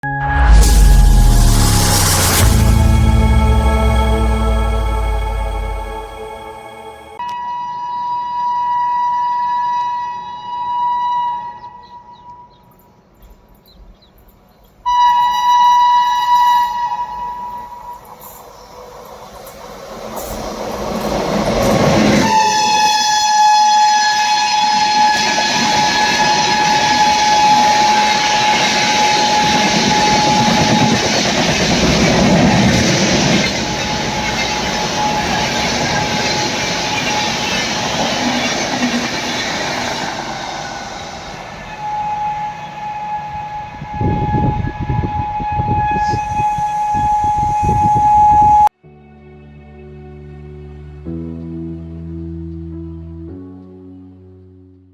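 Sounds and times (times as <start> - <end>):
moving train rumble: 0.0 - 7.2, 15.2 - 48.7
locomotive horn blast: 0.0 - 12.6, 14.9 - 18.4, 21.6 - 40.0, 40.8 - 48.7.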